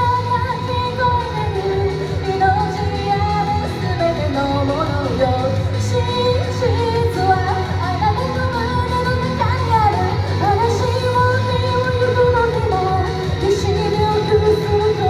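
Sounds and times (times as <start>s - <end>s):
person singing pop song: 0.0s - 15.0s.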